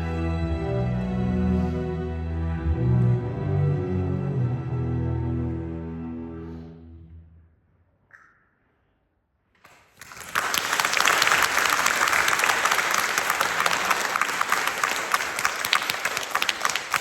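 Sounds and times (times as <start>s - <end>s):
audience applauding: 9.7s - 17.0s.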